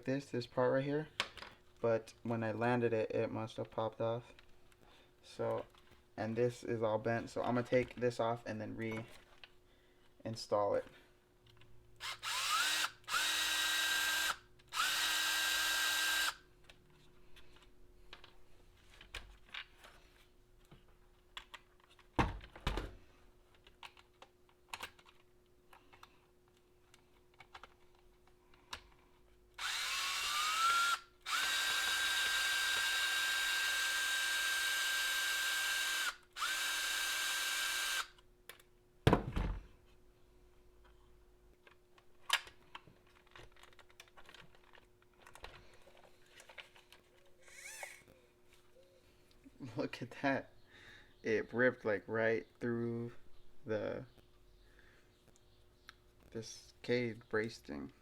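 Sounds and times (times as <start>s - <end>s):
electric screwdriver running: 12.0s - 16.4s, 29.6s - 38.2s, 47.5s - 48.0s.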